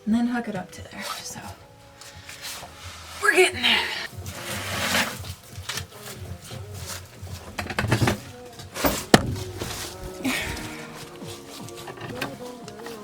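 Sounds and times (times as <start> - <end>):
sharp knocks and clatters: 7.4 - 10.0.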